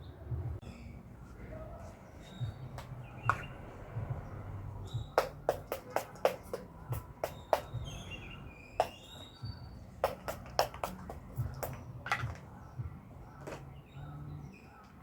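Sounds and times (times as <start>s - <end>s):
sharp clicks and taps: 5.2s - 7.8s, 10.0s - 12.4s.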